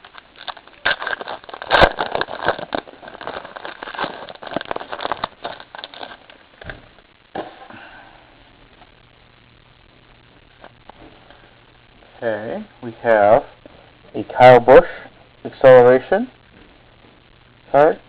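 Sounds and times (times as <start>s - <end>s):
wrapper tearing and crinkling: 0.0s - 6.7s.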